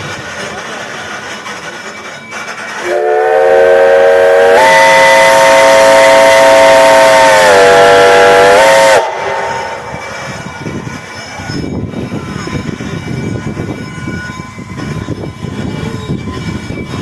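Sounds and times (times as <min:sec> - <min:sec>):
steam hiss: 0:00.0 - 0:17.0
steam whistle blowing: 0:02.8 - 0:10.8.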